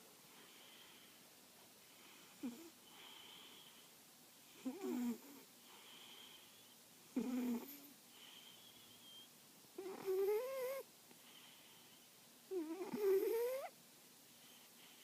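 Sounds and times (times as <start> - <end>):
faint high whistle: 8.2 - 9.4.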